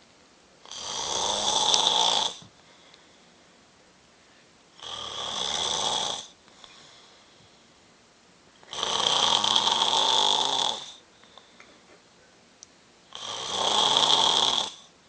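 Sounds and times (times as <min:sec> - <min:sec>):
quiet breathing: 0:00.0 - 0:12.4
man snoring loudly: 0:00.6 - 0:02.4, 0:04.8 - 0:06.4, 0:08.7 - 0:11.0, 0:13.1 - 0:14.9.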